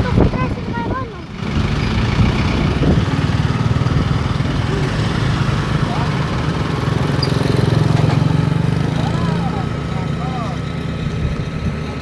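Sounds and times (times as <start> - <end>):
heavy engine running steadily: 0.0 - 12.0
faint voices: 4.1 - 12.0.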